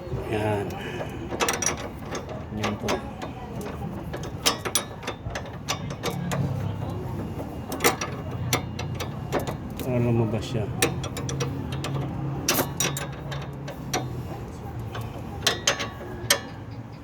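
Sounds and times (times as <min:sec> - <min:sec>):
ratchet wrench clicking: 0:01.4 - 0:07.0, 0:10.8 - 0:16.8.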